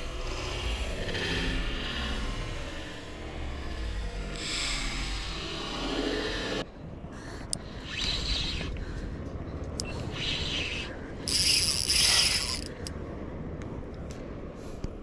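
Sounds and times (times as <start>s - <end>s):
fishing reel whirring: 11.2s - 12.9s.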